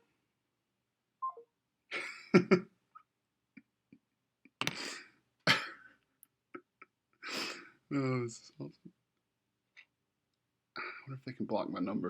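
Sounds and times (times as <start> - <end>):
person coughing: 5.5 - 5.9.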